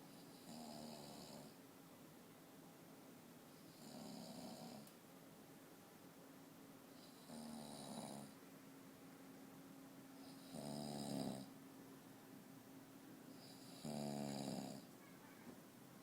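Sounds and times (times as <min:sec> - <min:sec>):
person snoring: 0:00.3 - 0:01.6, 0:10.2 - 0:11.5, 0:13.4 - 0:14.9.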